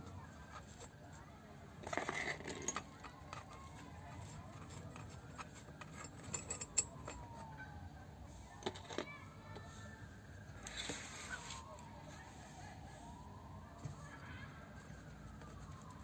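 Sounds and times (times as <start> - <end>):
metal parts clinking and rattling: 1.8 - 7.5.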